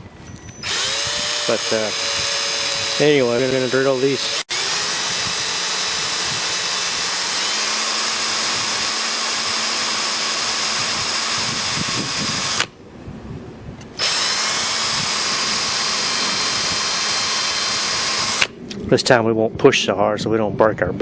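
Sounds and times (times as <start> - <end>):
power drill drilling: 0.5 - 12.7, 14.0 - 18.6.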